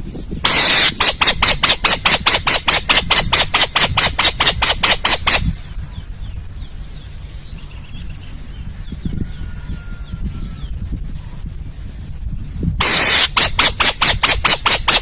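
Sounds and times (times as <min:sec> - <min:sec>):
high insect-like whine: 0:00.0 - 0:15.0
owl screeching: 0:00.4 - 0:05.5, 0:12.8 - 0:15.0.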